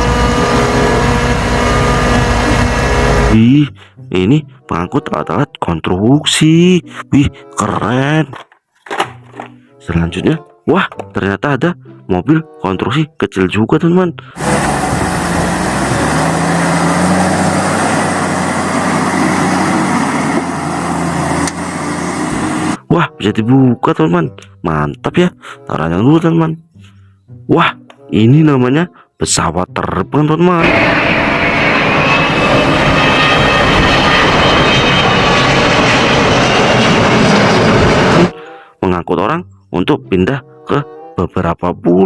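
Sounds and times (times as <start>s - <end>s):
construction vehicle engine running: 0.0s - 3.4s, 14.4s - 22.8s.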